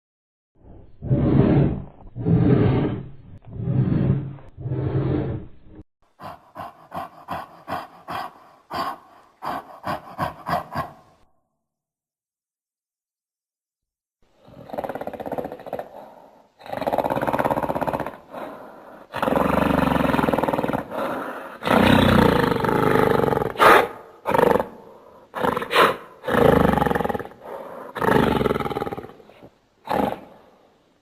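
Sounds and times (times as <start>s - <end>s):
ape roars and growls: 0.6s - 7.5s, 14.4s - 23.6s, 24.3s - 30.3s.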